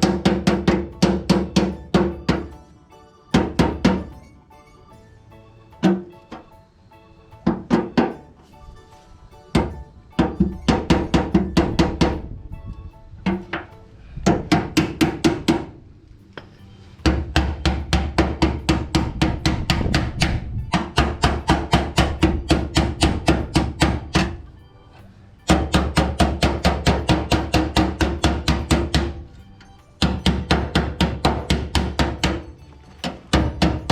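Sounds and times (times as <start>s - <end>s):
hammer striking steel sheet: 0.0s - 2.6s, 13.3s - 15.8s, 17.0s - 24.4s, 25.5s - 29.2s, 30.0s - 33.9s.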